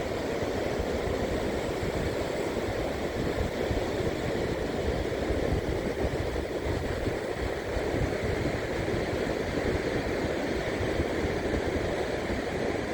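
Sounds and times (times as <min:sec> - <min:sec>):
wind rumbling on microphone: 0:00.0 - 0:12.9.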